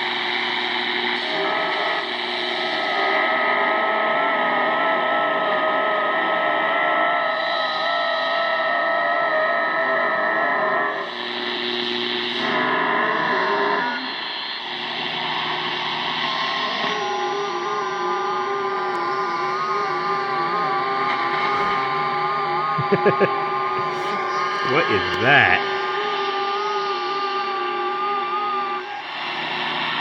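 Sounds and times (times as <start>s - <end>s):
radio hiss: 22.8s - 25.8s.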